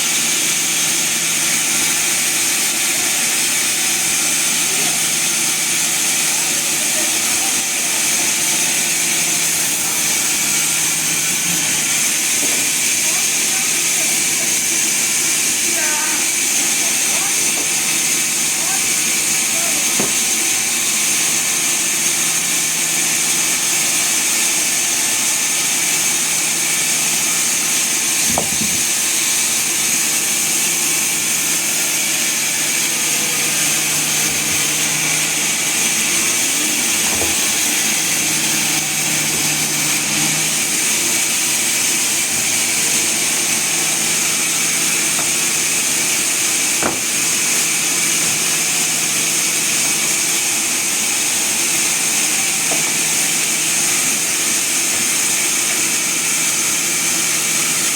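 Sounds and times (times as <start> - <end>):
sawmill saw hissing: 0.0 - 57.9.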